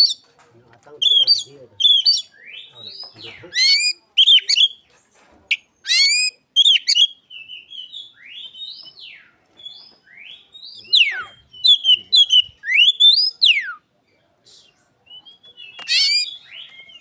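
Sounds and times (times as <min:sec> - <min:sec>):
songbird whistling and chirping: 0:01.0 - 0:04.8, 0:05.5 - 0:13.9, 0:14.5 - 0:17.0.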